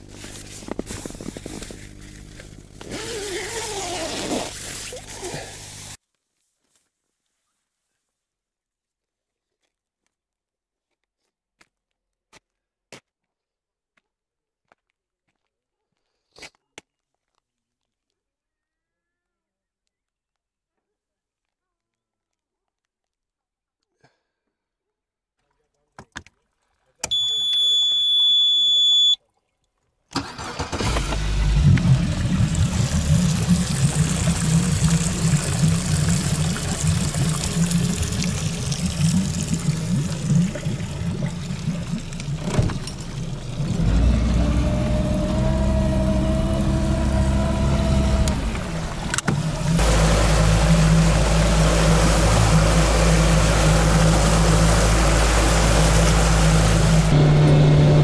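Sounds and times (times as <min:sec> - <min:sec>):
engine humming: 0:00.0 - 0:06.0, 0:30.2 - 0:58.0
high electronic beep: 0:27.1 - 0:29.2.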